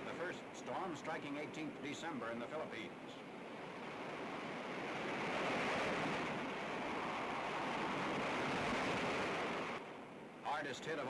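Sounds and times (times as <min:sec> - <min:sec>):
wind: 0:00.0 - 0:11.0.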